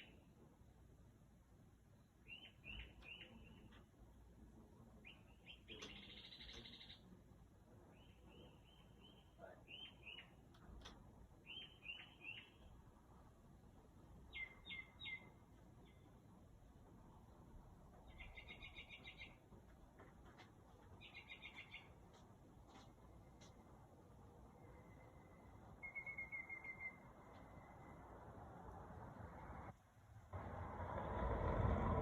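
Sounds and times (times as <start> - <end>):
faint bird song: 0.0 - 0.7, 1.8 - 16.5, 17.1 - 19.5, 20.2 - 28.8.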